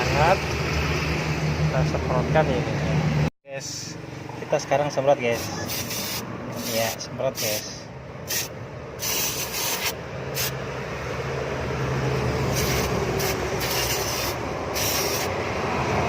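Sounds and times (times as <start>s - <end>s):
aerosol spray hissing: 5.4s - 7.6s, 8.3s - 10.6s, 12.5s - 15.3s.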